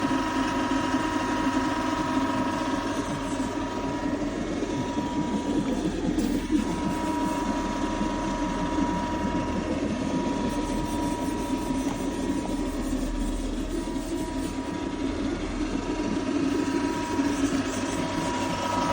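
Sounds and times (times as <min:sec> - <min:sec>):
excavator engine drone: 0:00.0 - 0:18.9.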